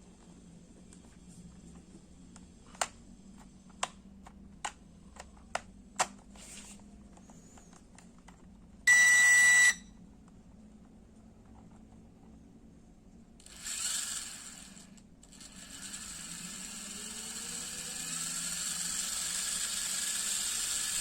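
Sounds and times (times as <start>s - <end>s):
electronic beep: 8.9s - 9.9s.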